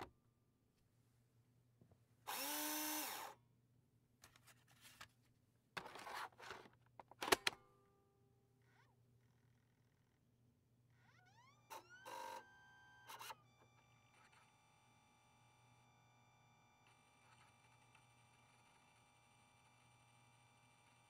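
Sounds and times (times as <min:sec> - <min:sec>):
disk drive motor whine: 0:11.1 - 0:21.0.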